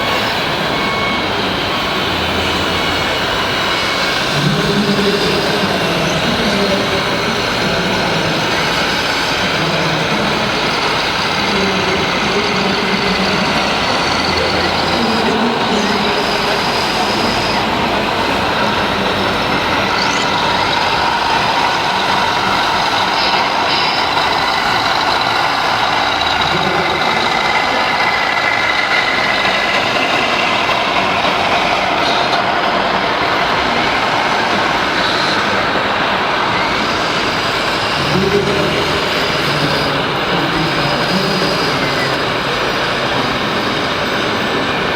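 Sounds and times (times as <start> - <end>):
small electric motors running: 0.0 - 32.4
hydraulic pumps running: 0.0 - 44.9.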